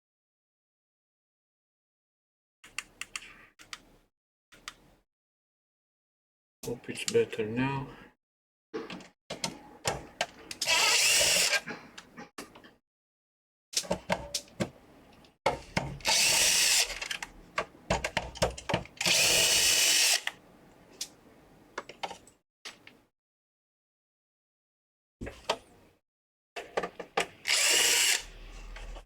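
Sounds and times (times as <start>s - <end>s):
electric screwdriver running: 10.6s - 11.6s, 16.0s - 17.0s, 19.0s - 20.3s, 27.4s - 28.3s.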